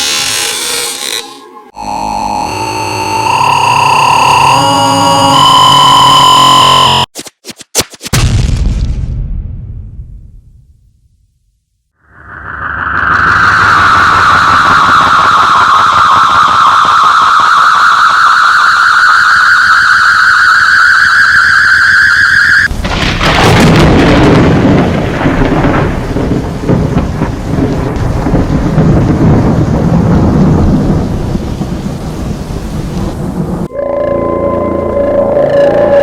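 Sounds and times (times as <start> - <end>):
wavering alarm tone: 1.7 - 7.1, 12.1 - 22.7, 33.7 - 36.0
crack and thunder rumble: 12.1 - 17.9, 22.7 - 33.7.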